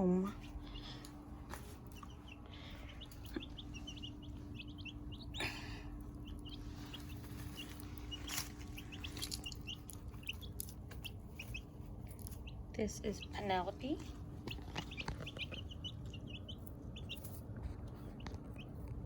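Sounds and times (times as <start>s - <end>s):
steady low hum: 0.0s - 19.0s
chicks peeping: 0.2s - 19.0s.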